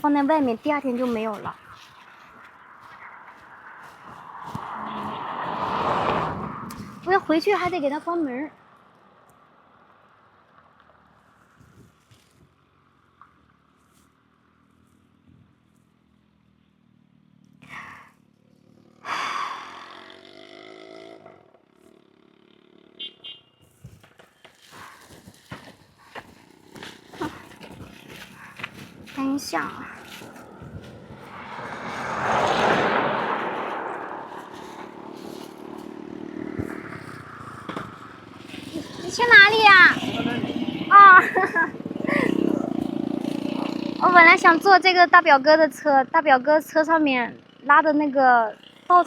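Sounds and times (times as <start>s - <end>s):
vehicle passing close: 0.0s - 11.5s, 16.2s - 23.4s, 24.6s - 47.6s
engine humming: 17.3s - 47.8s.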